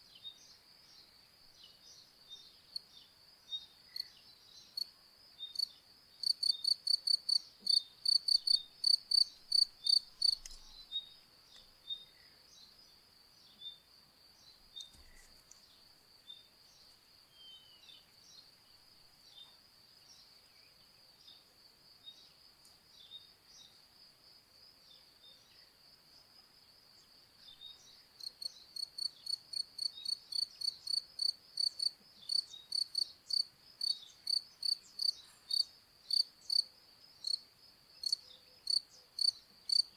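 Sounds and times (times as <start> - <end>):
faint bird chirps: 0.0 - 23.8
crickets chirping: 0.0 - 39.9.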